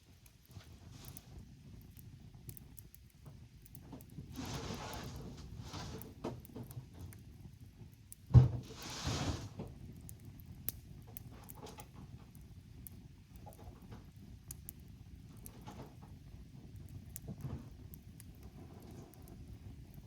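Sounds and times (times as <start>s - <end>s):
campfire crackling and popping: 0.0s - 20.0s
rustling hiss: 4.3s - 6.3s, 8.4s - 9.7s
heavy thump: 8.3s - 9.4s.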